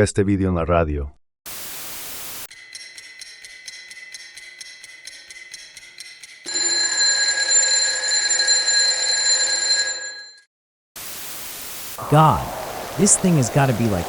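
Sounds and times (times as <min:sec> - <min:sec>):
clock ticking rapidly: 0:02.5 - 0:08.1
alarm bell ringing: 0:02.5 - 0:10.5.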